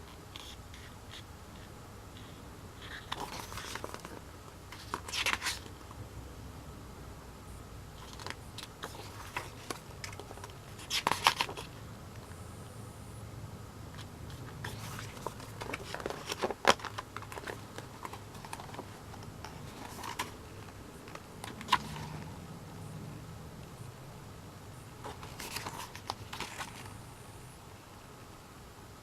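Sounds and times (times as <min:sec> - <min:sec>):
paper pages rustling: 0:00.0 - 0:05.8, 0:08.0 - 0:11.8, 0:14.0 - 0:22.3, 0:25.0 - 0:27.0.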